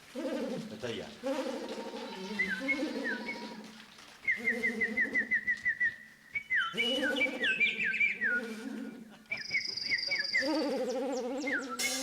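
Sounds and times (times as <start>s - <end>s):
dove-like cooing: 1.3s - 3.7s, 6.7s - 9.4s, 10.1s - 11.8s
high whistled sliding notes: 11.6s - 12.0s.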